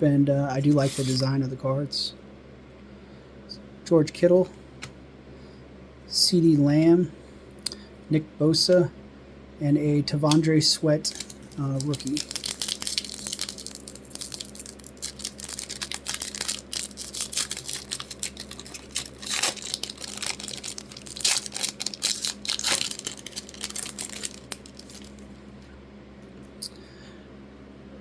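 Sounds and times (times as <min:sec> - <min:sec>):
wrapper being torn and crinkled: 0:00.7 - 0:01.2, 0:11.1 - 0:25.3.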